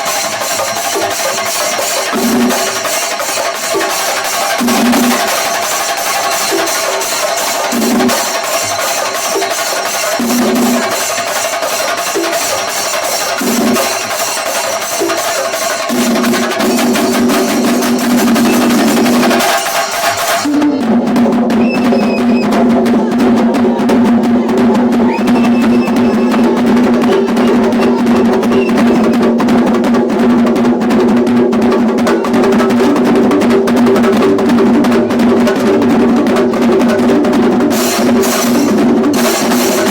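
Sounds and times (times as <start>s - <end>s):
clashing cymbals: 0.0s - 20.6s, 37.7s - 39.9s
drums beaten in fast rolls: 0.0s - 39.9s.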